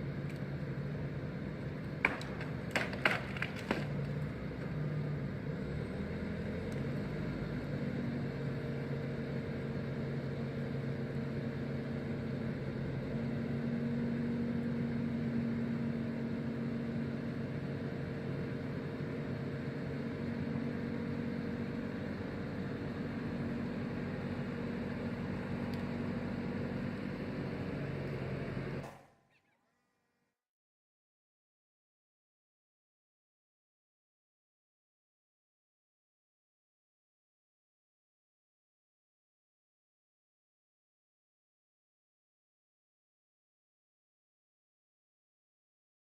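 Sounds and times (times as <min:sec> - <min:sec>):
forestry machine engine humming: 0:00.0 - 0:29.1.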